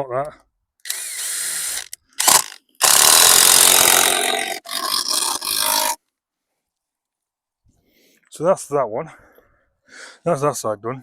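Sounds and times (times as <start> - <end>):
power drill driving screws into wood: 0.8 - 6.0.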